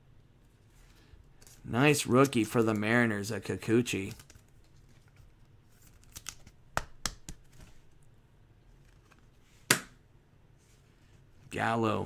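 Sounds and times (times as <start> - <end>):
cards clicking and snapping: 4.0 - 4.8, 5.8 - 7.8.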